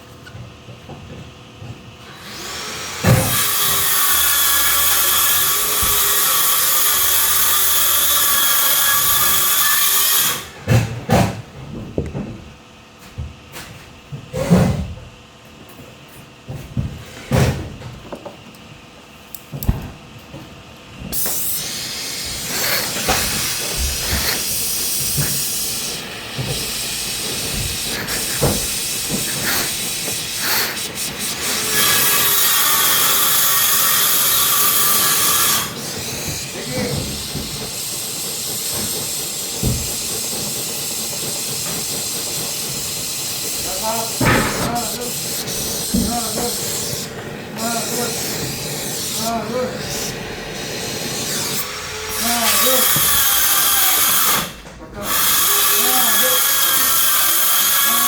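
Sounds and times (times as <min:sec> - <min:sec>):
refrigerant hissing from pipes: 0:02.0 - 0:10.6, 0:21.1 - 0:58.0.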